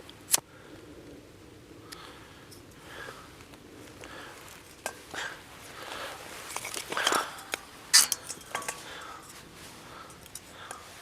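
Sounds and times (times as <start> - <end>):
kindling rustling and crackling: 2.5 - 11.0.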